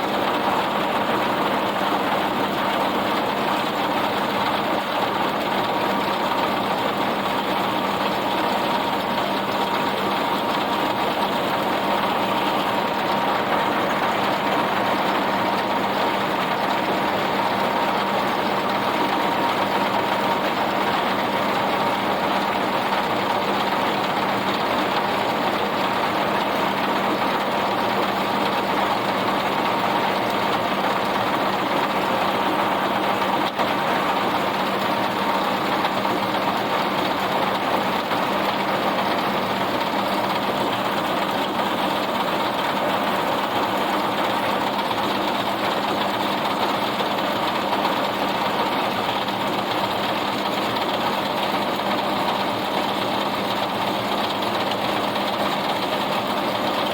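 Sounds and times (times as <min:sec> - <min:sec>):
tractor engine droning with whine: 0:00.0 - 0:56.9.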